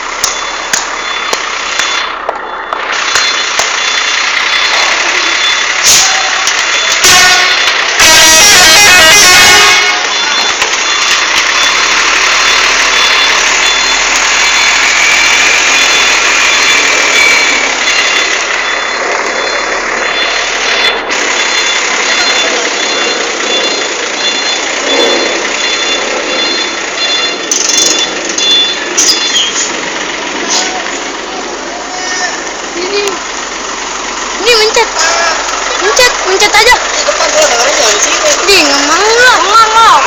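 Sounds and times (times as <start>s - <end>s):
truck engine running: 0.0s - 40.0s
faint high beep: 10.1s - 11.8s, 15.8s - 29.5s.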